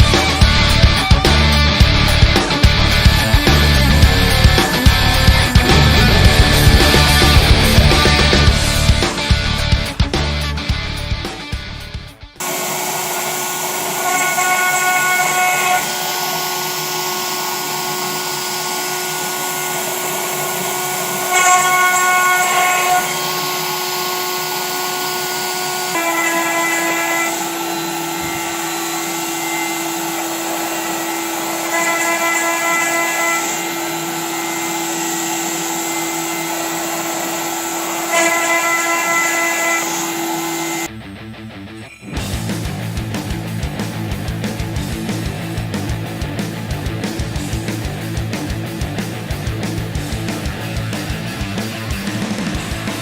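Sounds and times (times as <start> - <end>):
router spindle whine: 0.0 - 9.6, 12.4 - 40.9.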